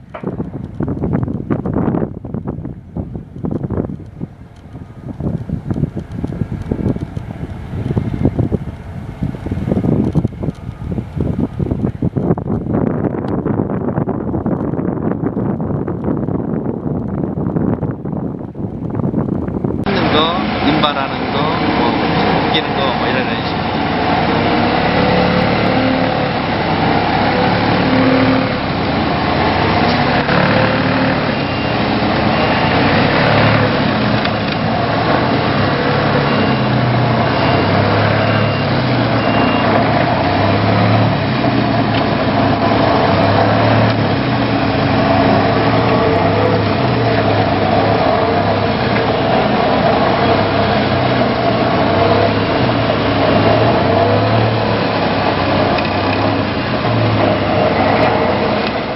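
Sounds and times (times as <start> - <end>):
vibratory hammer drone: 0.0 - 58.9
short high beeps: 31.0 - 33.4, 36.1 - 39.8.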